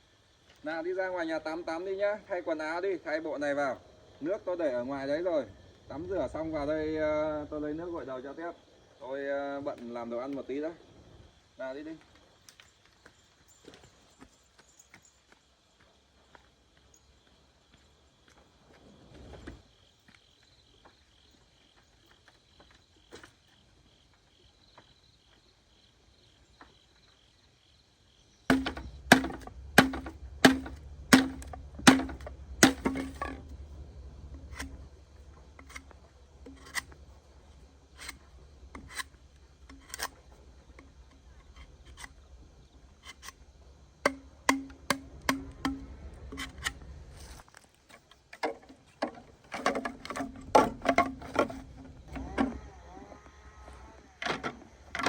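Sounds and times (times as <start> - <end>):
insects chirring: 0.0 - 55.0
knife chopping on wooden board: 28.5 - 33.4.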